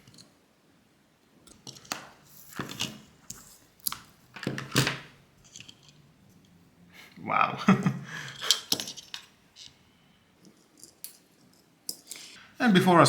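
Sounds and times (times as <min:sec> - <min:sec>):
plastic parts clicking and knocking: 0:01.4 - 0:06.0, 0:08.3 - 0:09.8.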